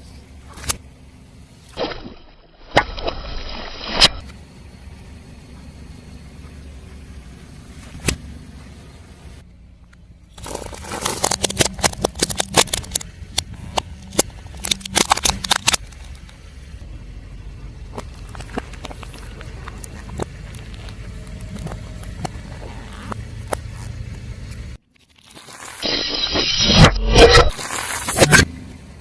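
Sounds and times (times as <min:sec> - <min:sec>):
car engine running: 0:00.0 - 0:02.5, 0:03.6 - 0:24.8
tyre crushing crunchy objects: 0:10.3 - 0:16.3.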